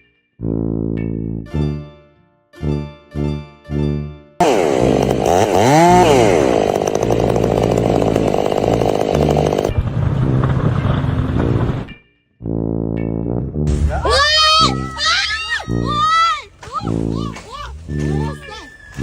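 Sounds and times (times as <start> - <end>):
small motor whining: 4.4 - 9.7.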